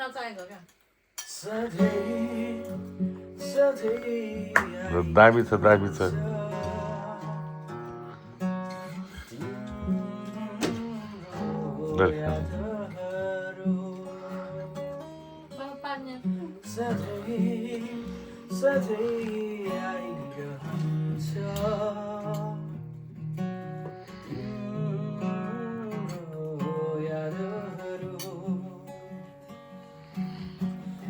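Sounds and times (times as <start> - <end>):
strummed acoustic guitar: 1.2 - 31.0
man singing: 1.3 - 8.3, 9.0 - 15.2, 16.6 - 22.8, 24.1 - 29.3.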